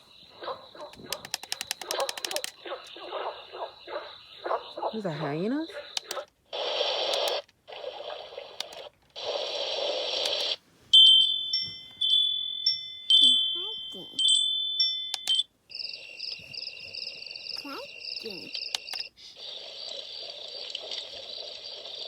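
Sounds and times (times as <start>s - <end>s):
bursts of hissing noise: 2.7s - 10.6s, 17.6s - 22.0s
wind chimes ringing: 11.0s - 16.3s.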